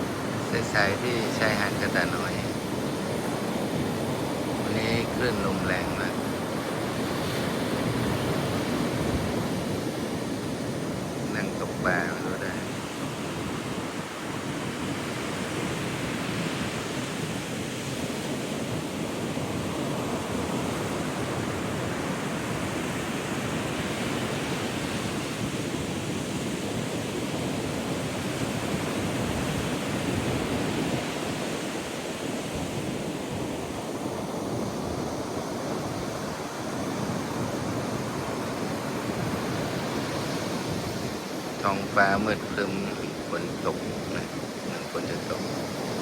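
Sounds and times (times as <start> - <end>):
wind buffeting microphone: 0.0 - 16.2
surf breaking on beach: 0.0 - 46.0.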